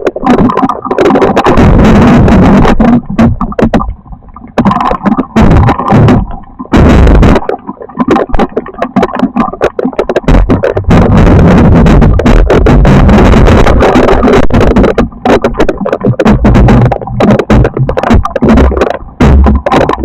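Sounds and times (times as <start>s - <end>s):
sharp cracks and hits: 0.2s - 20.0s
thunderstorm noise: 1.5s - 3.4s, 5.4s - 7.4s, 10.3s - 15.4s.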